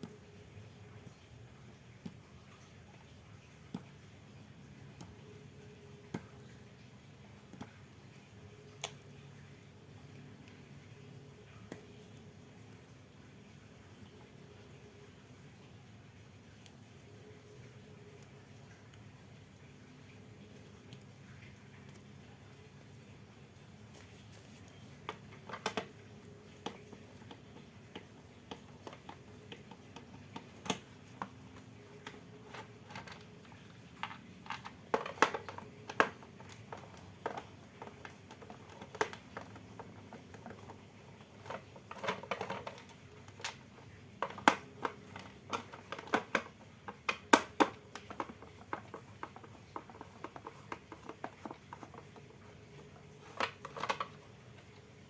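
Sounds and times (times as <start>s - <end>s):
faint steady hum: 0.0s - 55.0s
small parts and tools clicking: 24.6s - 54.8s.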